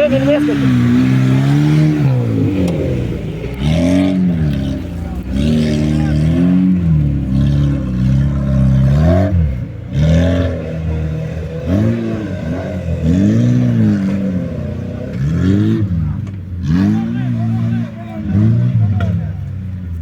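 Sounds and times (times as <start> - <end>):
off-road vehicle engine revving: 0.0 - 20.0.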